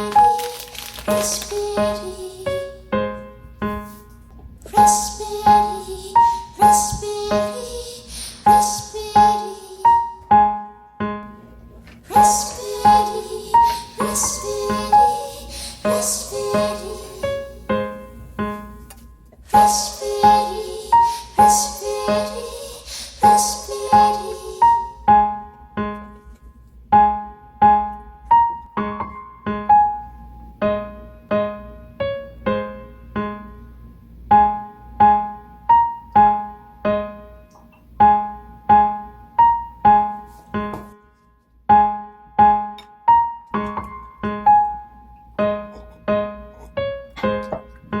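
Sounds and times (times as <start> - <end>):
keyboard melody: 0.0 - 7.9.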